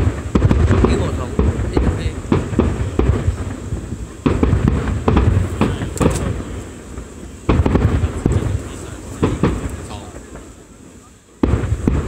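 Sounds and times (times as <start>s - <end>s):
firework shells bursting: 0.0s - 12.0s
low rumbling echo: 0.0s - 12.0s.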